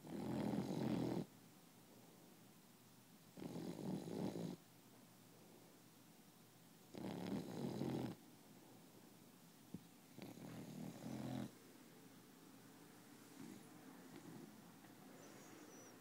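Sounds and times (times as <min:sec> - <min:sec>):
puppy snoring: 0:00.0 - 0:01.3, 0:03.3 - 0:04.6, 0:06.9 - 0:08.2, 0:10.1 - 0:11.6, 0:13.3 - 0:16.0
faint puppy breath: 0:10.0 - 0:11.6, 0:13.1 - 0:16.0.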